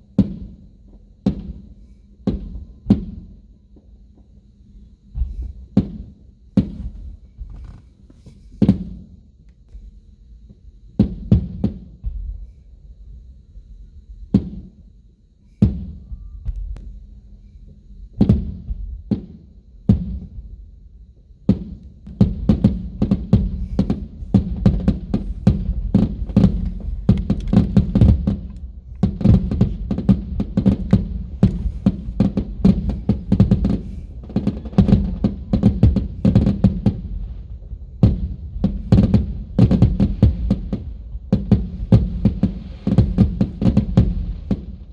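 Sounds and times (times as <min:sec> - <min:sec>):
fireworks exploding: 0:00.2 - 0:03.4, 0:05.2 - 0:07.7, 0:08.6 - 0:09.2, 0:11.0 - 0:12.4, 0:14.3 - 0:14.7, 0:15.6 - 0:16.7, 0:18.2 - 0:20.4, 0:21.5 - 0:44.9.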